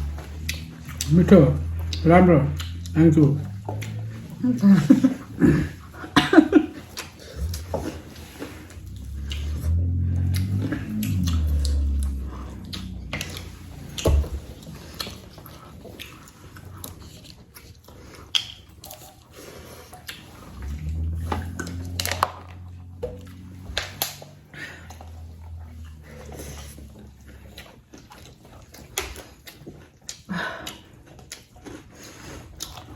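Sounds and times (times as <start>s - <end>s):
person chewing and biting: 0.0s - 4.4s, 6.8s - 32.9s
low rumble: 0.0s - 6.3s, 7.3s - 15.0s, 20.4s - 27.5s.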